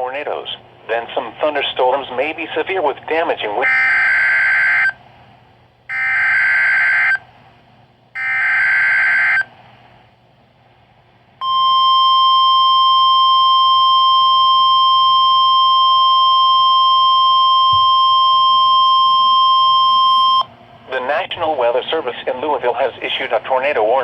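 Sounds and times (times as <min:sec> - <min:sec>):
steady warning alarm tone: 0:03.6 - 0:05.0, 0:05.9 - 0:07.3, 0:08.2 - 0:09.5, 0:11.4 - 0:20.5.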